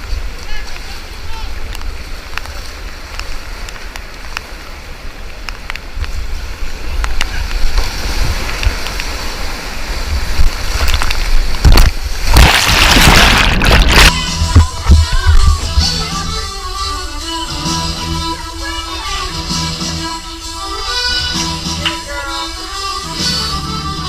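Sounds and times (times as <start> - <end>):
kayak splashing through wave: 0.0 - 17.4
whitewater rapids rushing: 0.0 - 24.0
low microphone rumble: 10.0 - 16.6.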